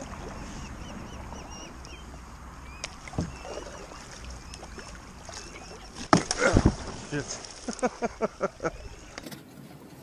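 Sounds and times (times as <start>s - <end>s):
birds chirping: 0.0s - 6.2s.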